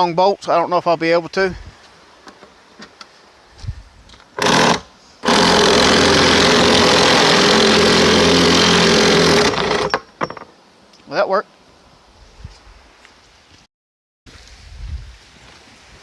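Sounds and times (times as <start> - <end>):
power tool running: 4.4 - 10.0.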